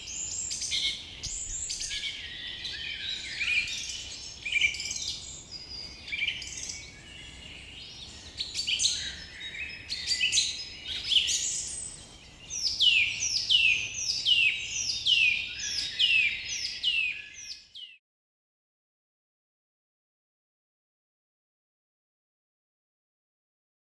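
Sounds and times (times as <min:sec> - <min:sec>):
songbirds chirping: 0:00.0 - 0:18.0.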